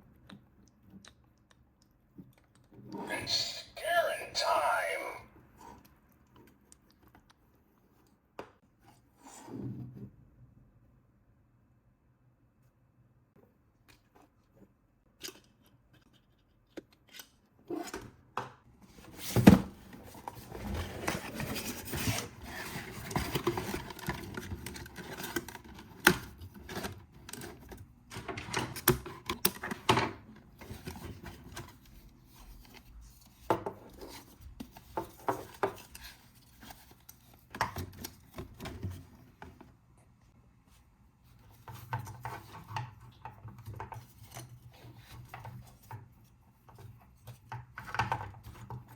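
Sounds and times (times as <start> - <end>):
toy packaging rustling: 3.2 - 5.2.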